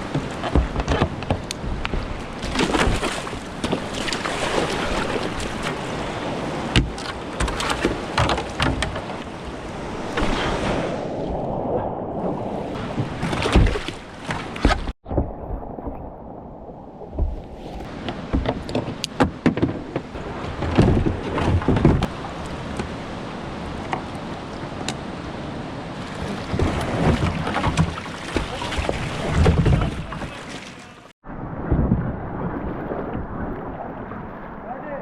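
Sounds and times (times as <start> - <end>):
paddle splashes: 0.0 - 31.1
wind on microphone: 4.4 - 14.0.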